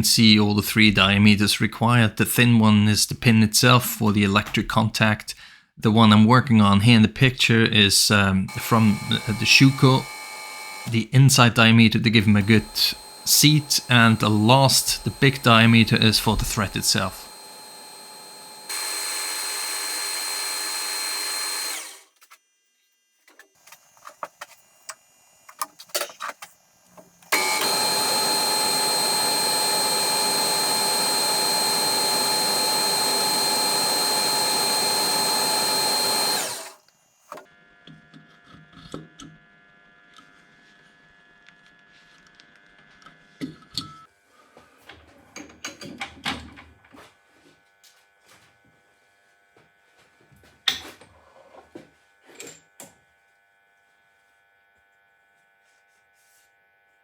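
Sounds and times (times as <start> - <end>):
power tool running: 8.5 - 22.2, 27.1 - 37.4.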